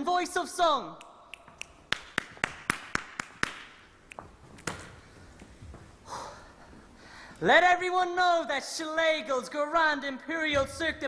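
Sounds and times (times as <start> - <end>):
soft breathy sound: 5.0 - 7.4.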